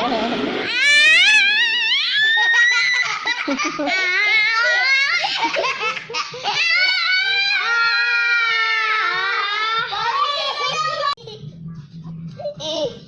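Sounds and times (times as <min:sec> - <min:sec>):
child squealing: 0:00.7 - 0:03.1
child laughing: 0:00.8 - 0:07.0.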